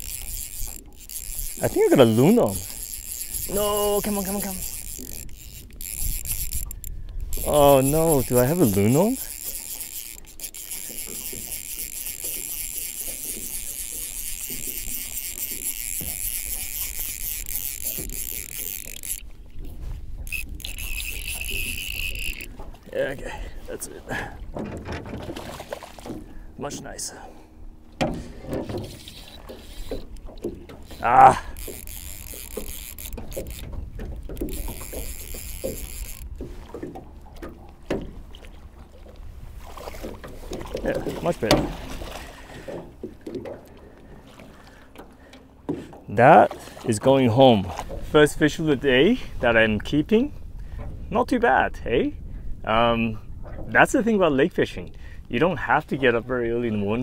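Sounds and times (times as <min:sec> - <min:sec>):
fishing reel drag ratcheting: 0:00.0 - 0:23.6, 0:28.0 - 0:45.6.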